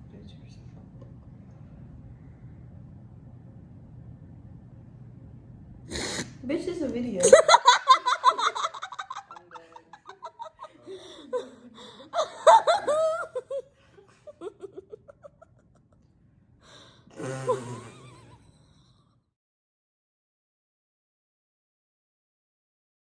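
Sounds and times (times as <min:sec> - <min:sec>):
people laughing: 0:07.2 - 0:15.7.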